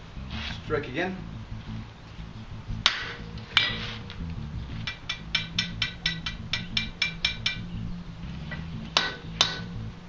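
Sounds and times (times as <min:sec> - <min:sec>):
hammer tapping on steel anvil: 0:04.7 - 0:07.8, 0:08.5 - 0:09.7.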